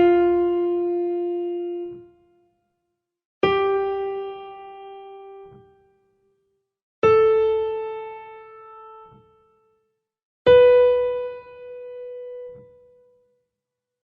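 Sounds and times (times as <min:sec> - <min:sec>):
piano-like keyboard notes: 0:00.0 - 0:02.4, 0:03.4 - 0:06.1, 0:10.5 - 0:13.2.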